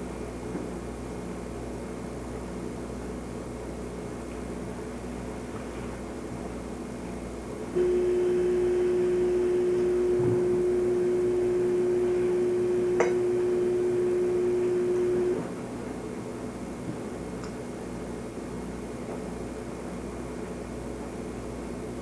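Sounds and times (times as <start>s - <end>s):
low background hum: 0.0s - 22.0s
steady single-pitched tone: 7.8s - 15.5s.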